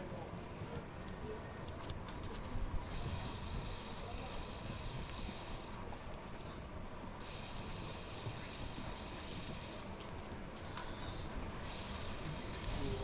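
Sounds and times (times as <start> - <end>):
street noise: 0.0 - 13.0
wind rumbling on microphone: 0.5 - 7.0
steady high hiss: 11.6 - 13.0.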